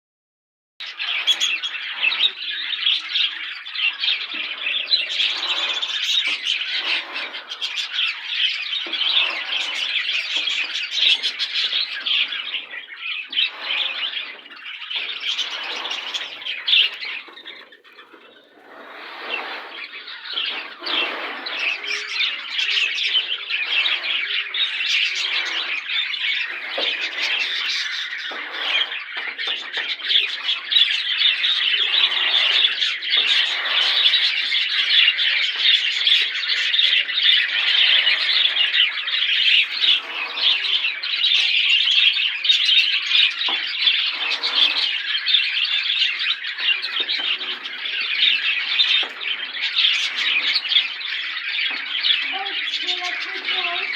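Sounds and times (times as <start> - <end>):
parakeets chattering and squawking: 0.8 - 53.9.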